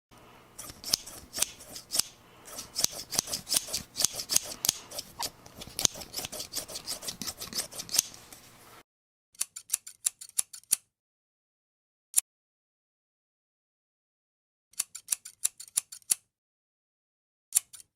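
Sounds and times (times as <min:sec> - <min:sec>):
metal scissors snipping: 0:00.6 - 0:08.3.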